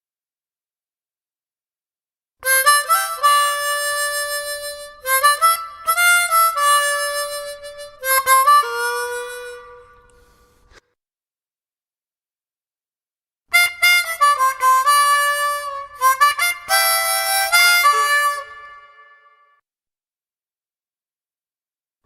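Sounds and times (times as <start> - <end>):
harmonica playing chords: 2.4 - 10.8, 13.5 - 19.4.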